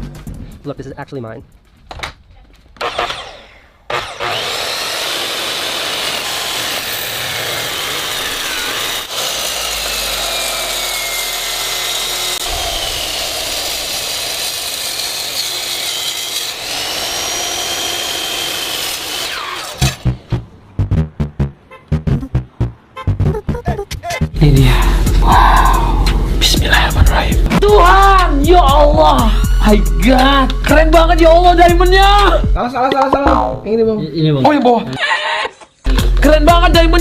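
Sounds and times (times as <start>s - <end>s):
power saw grinding with whine: 2.8s - 20.2s.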